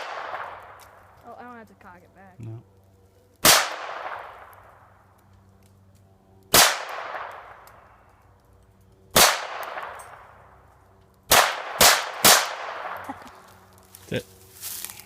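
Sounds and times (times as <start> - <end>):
gunshots with long echo: 0.0 - 0.8, 3.4 - 4.9, 6.5 - 7.6, 9.1 - 10.5, 11.3 - 13.2.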